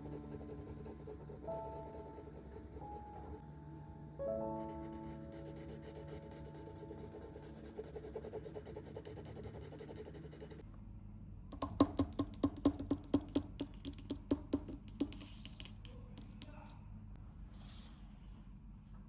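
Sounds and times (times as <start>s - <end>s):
marker stroking on paper: 0.0s - 3.4s, 5.0s - 10.6s, 13.8s - 16.5s
sharp taps: 11.5s - 16.6s.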